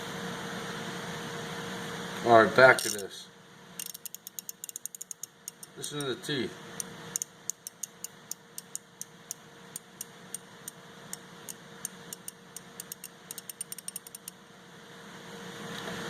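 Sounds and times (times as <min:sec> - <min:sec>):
ratchet clicking: 0:02.8 - 0:03.0, 0:03.8 - 0:06.2, 0:06.8 - 0:14.4.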